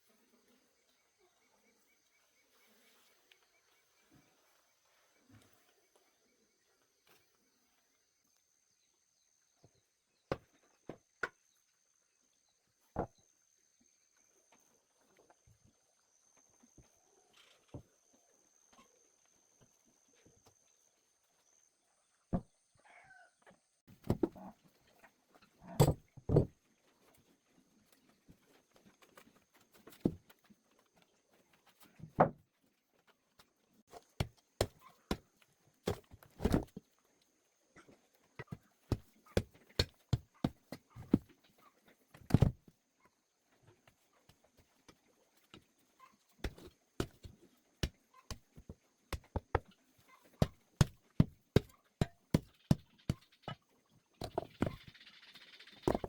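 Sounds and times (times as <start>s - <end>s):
hoe striking soil: 25.7s - 26.5s, 46.4s - 53.6s, 54.2s - 54.8s.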